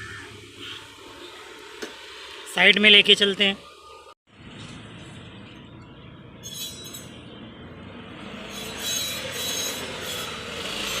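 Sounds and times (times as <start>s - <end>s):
metal scraping with thin squeal: 6.4s - 7.2s, 8.3s - 11.0s.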